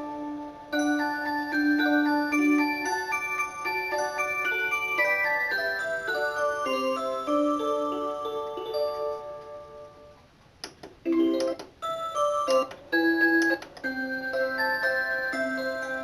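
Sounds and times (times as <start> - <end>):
electronic chiming melody: 0.0 - 10.1, 11.1 - 16.0
sharp clicks: 10.6 - 11.7.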